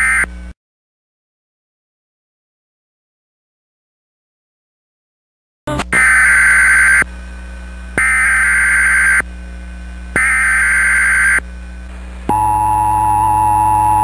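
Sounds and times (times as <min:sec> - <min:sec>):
buzzy digital data tones: 0:05.9 - 0:07.1, 0:08.0 - 0:09.3, 0:10.2 - 0:11.5, 0:12.3 - 0:14.0
two-tone attention signal: 0:12.3 - 0:14.0.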